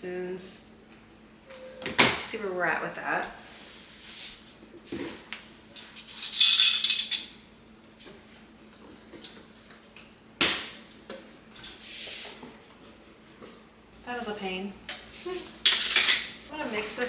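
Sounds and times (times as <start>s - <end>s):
measuring spoons clinking: 5.8s - 7.4s, 15.7s - 16.4s.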